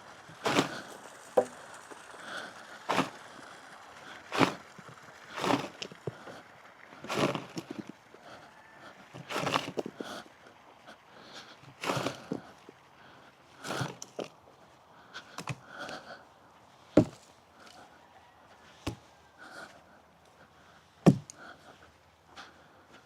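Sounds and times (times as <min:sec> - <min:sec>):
footsteps: 0:00.0 - 0:06.4, 0:07.0 - 0:08.0, 0:09.2 - 0:10.1.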